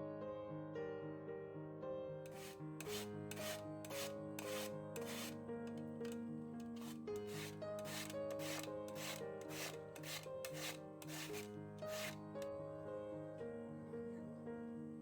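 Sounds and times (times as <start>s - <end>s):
rasping grater strokes: 2.3s - 12.3s.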